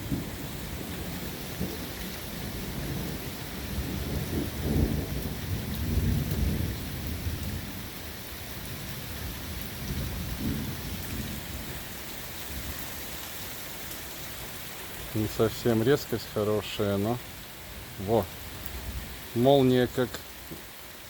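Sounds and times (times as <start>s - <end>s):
thunder rumbling: 0.0s - 11.8s
heavy rain falling: 0.0s - 21.0s.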